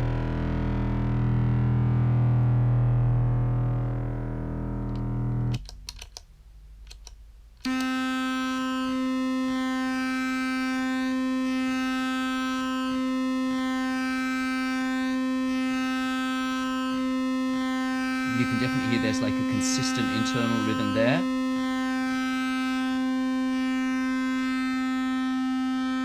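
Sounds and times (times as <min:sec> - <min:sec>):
distorted clarinet drone: 0:00.0 - 0:05.6, 0:08.6 - 0:26.0
sharp clicks: 0:04.9 - 0:07.2.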